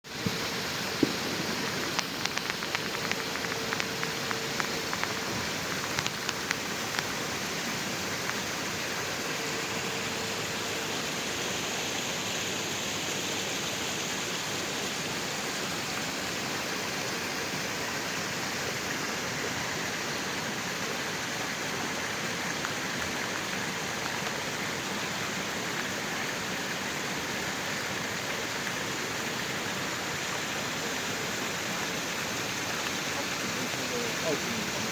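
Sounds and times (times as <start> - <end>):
water rushing: 0.0 - 34.9
sharp ticks: 0.2 - 9.0.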